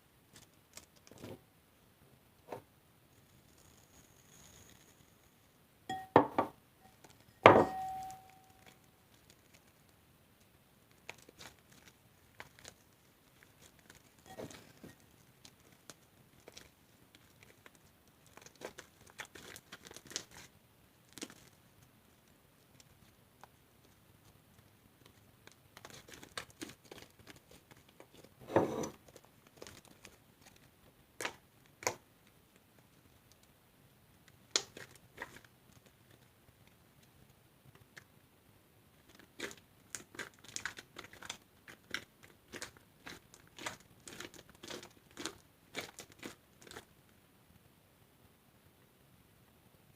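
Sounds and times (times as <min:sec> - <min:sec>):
slime popping and crackling: 0:10.9 - 0:21.6, 0:25.0 - 0:28.4, 0:34.4 - 0:36.3, 0:39.0 - 0:46.9.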